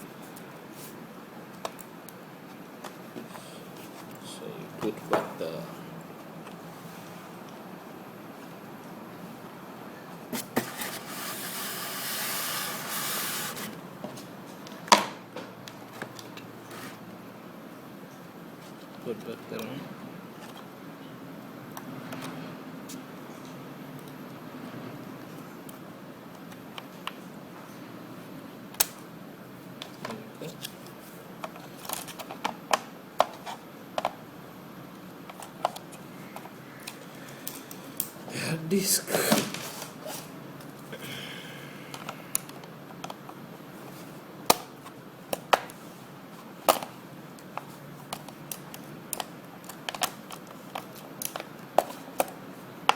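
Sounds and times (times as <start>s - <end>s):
rustling scraping hiss: 10.4s - 13.8s
small sharp clicks of laptop parts: 28.8s - 29.0s
plastic laptop parts clicking: 46.6s - 52.9s.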